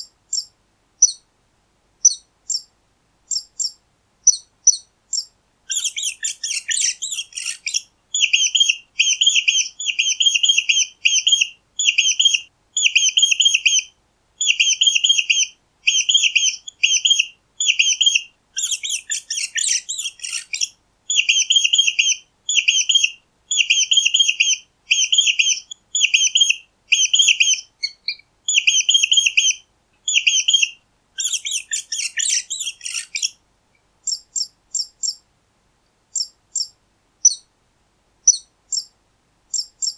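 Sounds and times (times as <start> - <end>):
mouse squeaking: 3.3 - 13.8, 18.6 - 23.0, 23.6 - 33.3, 34.1 - 35.2, 36.2 - 37.4, 39.5 - 39.9.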